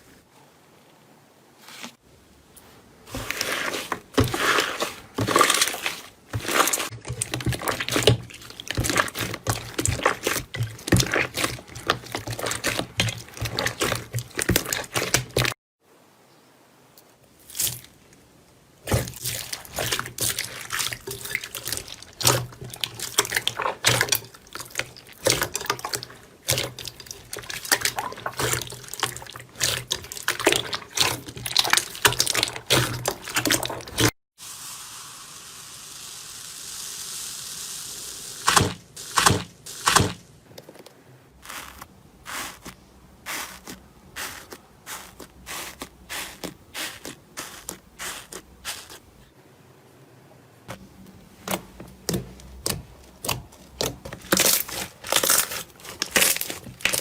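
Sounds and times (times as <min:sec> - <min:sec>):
slime squelching and crackling: 0:03.1 - 0:15.6, 0:18.8 - 0:34.1, 0:41.4 - 0:49.1, 0:52.1 - 0:57.0.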